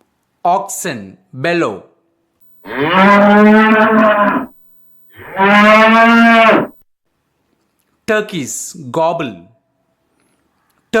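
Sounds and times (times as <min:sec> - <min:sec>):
ox bellowing: 0:02.6 - 0:04.5, 0:05.1 - 0:06.8.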